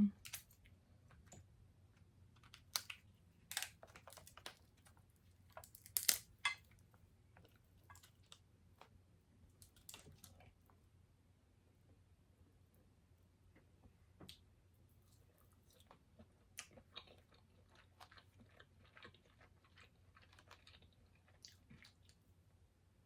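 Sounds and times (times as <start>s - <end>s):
person chewing food: 2.3s - 9.0s, 14.3s - 22.3s.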